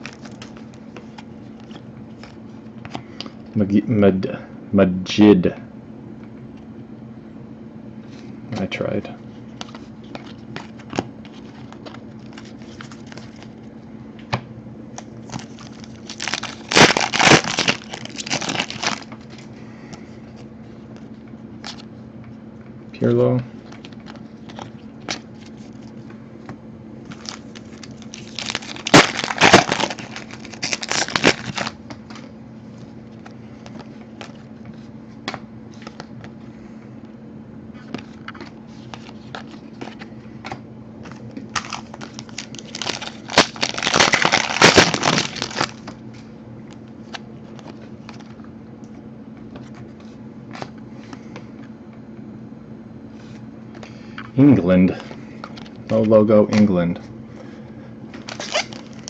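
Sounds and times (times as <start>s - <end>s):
card packs tearing open: 9.6s - 13.6s, 15.2s - 19.5s, 27.1s - 32.3s, 41.5s - 45.9s, 58.2s - 59.0s
foil wrappers crinkling: 9.6s - 13.6s, 15.0s - 19.5s, 27.0s - 34.8s, 41.1s - 46.0s, 55.0s - 59.0s.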